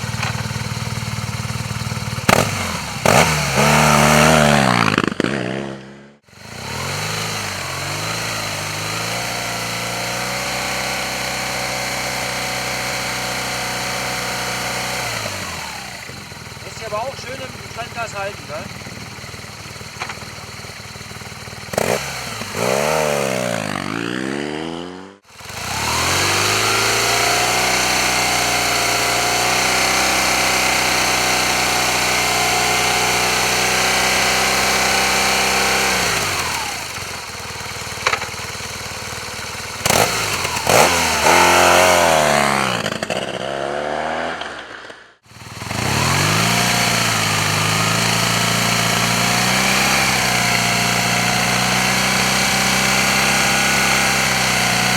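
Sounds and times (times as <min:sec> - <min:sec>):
motorcycle engine revving: 0:00.0 - 0:54.9.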